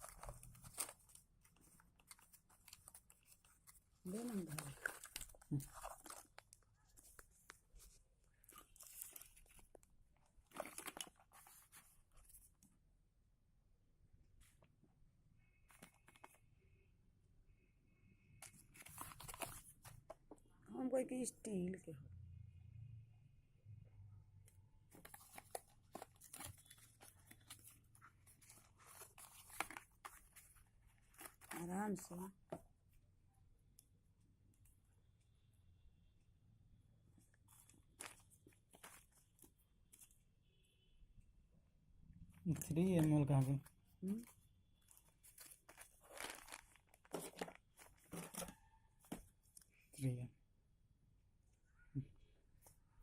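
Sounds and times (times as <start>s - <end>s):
packaging crinkling and tearing: 0.0s - 7.6s, 8.3s - 12.0s, 18.4s - 20.0s, 24.9s - 32.1s, 37.5s - 40.2s, 42.5s - 49.6s.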